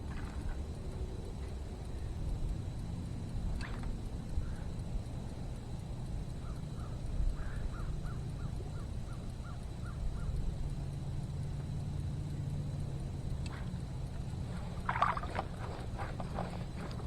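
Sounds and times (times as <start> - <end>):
steady low rumble: 0.0 - 17.0
bird calling: 6.4 - 10.4.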